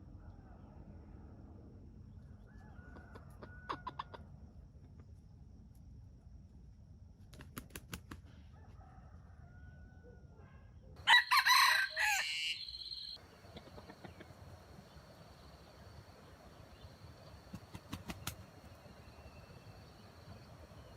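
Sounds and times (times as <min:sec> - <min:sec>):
rooster clucking: 0:02.9 - 0:04.3, 0:11.1 - 0:14.9
rooster crowing: 0:08.6 - 0:10.1, 0:11.0 - 0:14.3.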